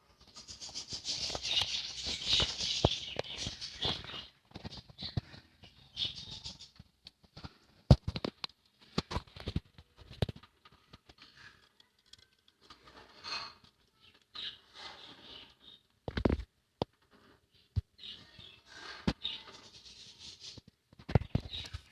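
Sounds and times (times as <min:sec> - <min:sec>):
faint high bird chirping: 0:00.1 - 0:06.8, 0:13.4 - 0:15.9, 0:17.5 - 0:20.6
taps and scratches in a cage: 0:00.2 - 0:17.9, 0:18.8 - 0:21.9.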